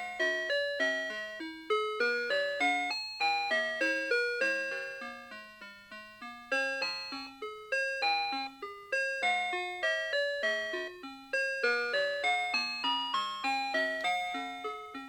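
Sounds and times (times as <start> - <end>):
alarm clock chime melody: 0.0 - 15.0.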